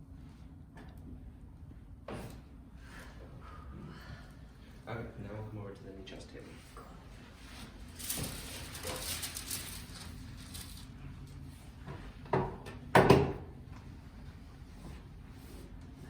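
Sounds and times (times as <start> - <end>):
rustling: 7.4 - 11.3.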